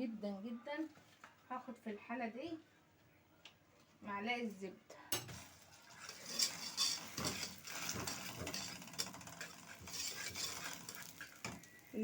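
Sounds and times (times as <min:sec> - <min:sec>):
spoon scraping a pot: 0:05.2 - 0:12.0.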